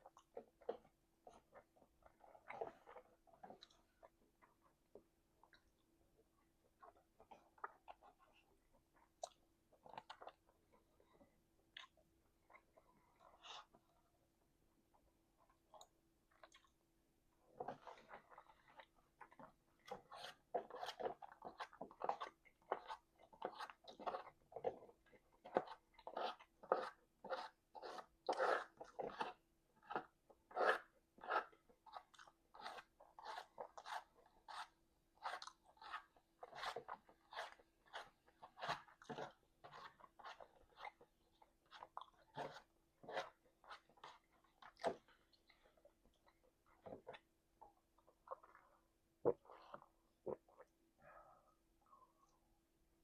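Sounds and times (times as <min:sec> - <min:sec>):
person chewing food messily: 0:17.8 - 0:50.7.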